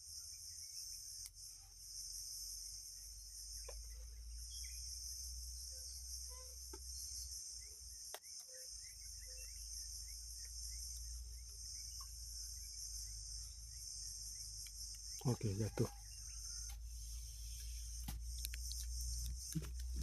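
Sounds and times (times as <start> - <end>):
crickets chirping: 0.0 - 20.0.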